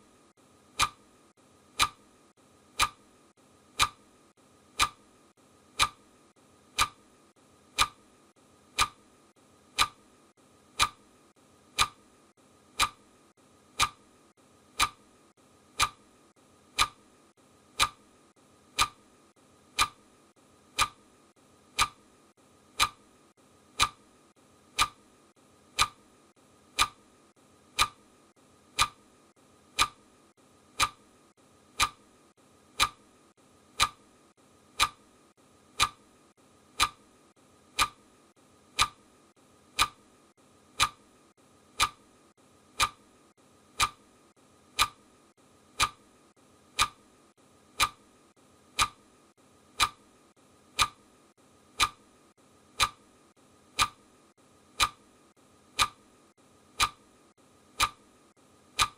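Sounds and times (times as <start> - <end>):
clock ticking: 0.7 - 1.0, 1.7 - 2.0, 2.7 - 3.1, 3.7 - 4.1, 4.7 - 5.1, 5.7 - 6.1, 6.7 - 7.0, 7.7 - 8.1, 8.7 - 9.1, 9.7 - 10.1, 10.7 - 11.1, 11.7 - 12.1, 12.7 - 13.1, 13.7 - 14.1, 14.7 - 15.1, 15.7 - 16.1, 16.7 - 17.1, 17.7 - 18.1, 18.7 - 19.1, 19.7 - 20.1, 20.7 - 21.1, 21.7 - 22.1, 22.7 - 23.1, 23.7 - 24.1, 24.7 - 25.1, 25.7 - 26.1, 26.7 - 27.1, 27.7 - 28.1, 28.7 - 29.1, 29.7 - 30.1, 30.7 - 31.1, 31.7 - 32.1, 32.7 - 33.1, 33.7 - 34.1, 34.7 - 35.1, 35.7 - 36.1, 36.7 - 37.1, 37.7 - 38.1, 38.7 - 39.0, 39.7 - 40.0, 40.7 - 41.1, 41.7 - 42.0, 42.7 - 43.1, 43.7 - 44.1, 44.7 - 45.1, 45.7 - 46.1, 46.7 - 47.1, 47.7 - 48.1, 48.7 - 49.1, 49.8 - 50.0, 50.7 - 51.1, 51.8 - 52.0, 52.8 - 53.0, 53.8 - 54.0, 54.8 - 55.0, 55.8 - 56.0, 56.7 - 57.0, 57.7 - 58.0.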